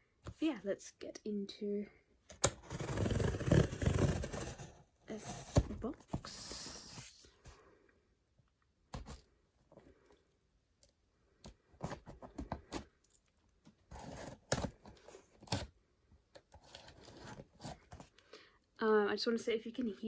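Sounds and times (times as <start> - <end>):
cardboard scratching and cracking: 2.4 - 5.9, 13.9 - 15.7, 16.5 - 18.1.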